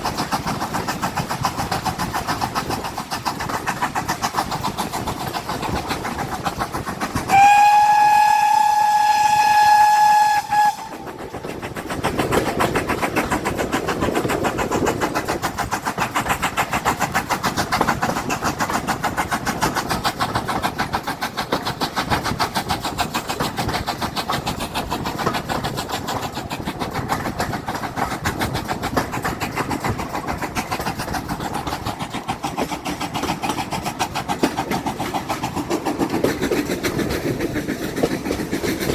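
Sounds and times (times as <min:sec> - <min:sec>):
train running rhythmically: 0:00.0 - 0:38.9
train whistle: 0:07.3 - 0:11.2.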